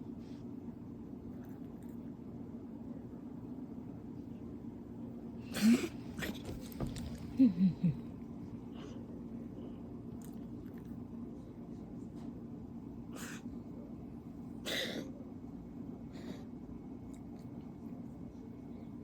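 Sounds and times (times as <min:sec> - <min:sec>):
cat sneezing: 0:05.4 - 0:06.5, 0:13.1 - 0:13.5, 0:14.6 - 0:15.2.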